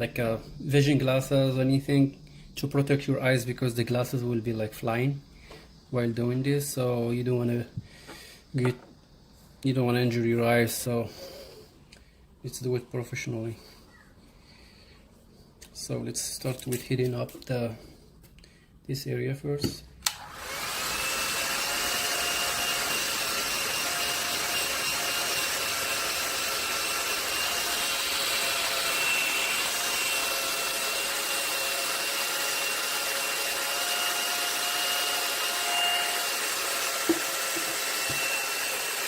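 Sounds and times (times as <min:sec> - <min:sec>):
hot-air blower whining: 0:20.0 - 0:39.0.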